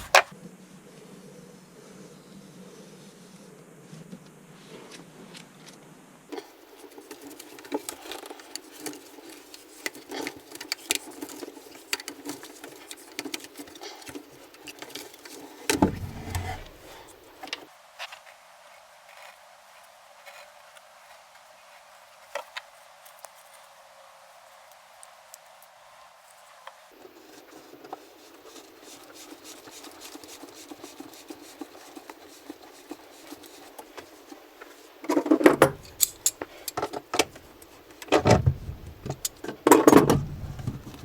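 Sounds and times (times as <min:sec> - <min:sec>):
tools clicking and knocking: 0:15.7 - 0:16.9, 0:35.1 - 0:41.0
heavy thump: 0:15.7 - 0:17.1, 0:38.2 - 0:39.3.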